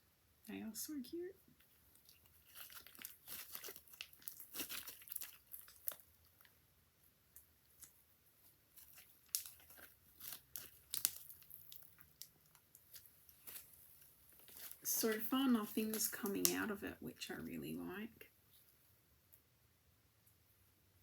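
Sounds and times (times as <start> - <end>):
slime crackling and popping: 1.8 - 6.5, 8.7 - 16.9.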